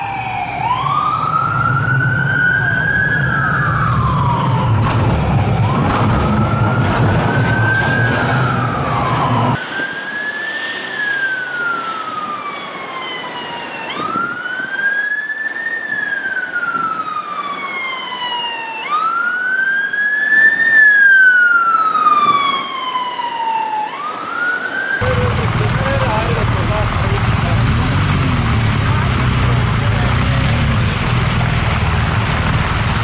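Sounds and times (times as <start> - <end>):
police siren wailing: 0.0 - 33.0
low rumble: 25.0 - 33.0.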